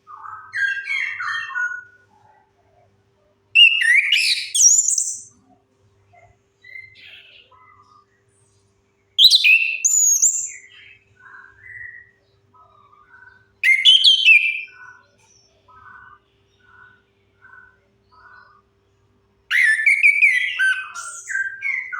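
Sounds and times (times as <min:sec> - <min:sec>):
bird whistling song: 0:03.6 - 0:05.4, 0:09.2 - 0:12.2, 0:13.6 - 0:15.0, 0:19.5 - 0:21.9.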